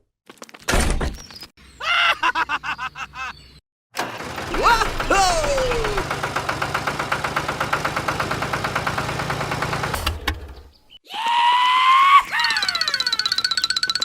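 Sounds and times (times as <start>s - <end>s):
engine chugging: 4.0s - 10.6s.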